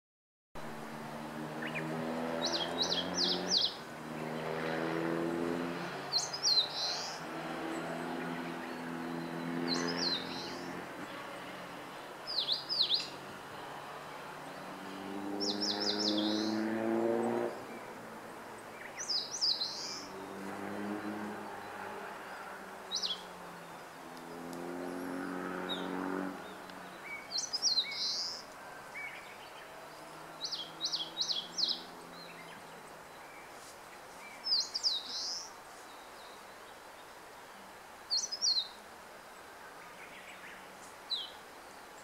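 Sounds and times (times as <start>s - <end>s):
warbler singing: 1.2s - 38.8s, 39.4s - 42.0s.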